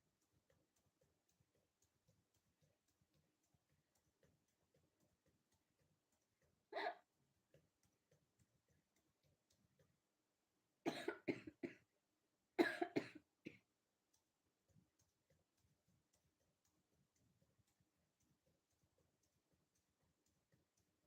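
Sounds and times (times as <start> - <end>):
person coughing: 6.8 - 7.0, 10.9 - 11.8, 12.6 - 13.6.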